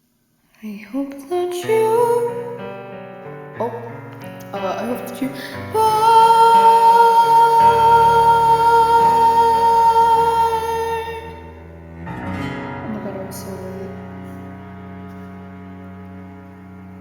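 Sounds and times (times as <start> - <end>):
woman singing long note: 5.7 - 11.6.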